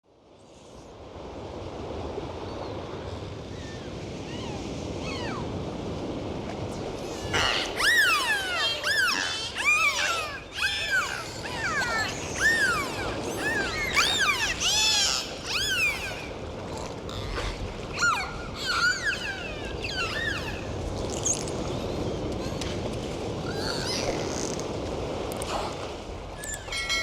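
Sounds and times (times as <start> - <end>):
dolphins whistling: 3.5 - 5.5, 7.1 - 16.4, 17.1 - 22.0, 26.4 - 27.0.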